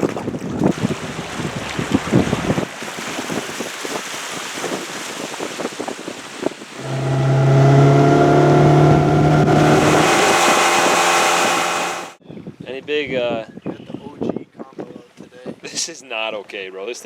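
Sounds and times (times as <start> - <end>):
water noise: 0.0 - 5.1, 6.5 - 12.2
wind noise: 0.0 - 14.6
outboard motor running: 0.7 - 2.6, 6.8 - 12.2.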